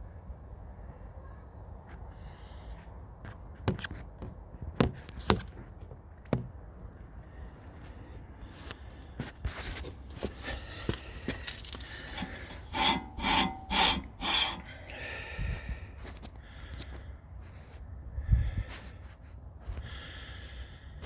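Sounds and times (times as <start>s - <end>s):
knocks of tools and parts: 3.7s - 6.8s
short scrape: 9.5s - 14.8s.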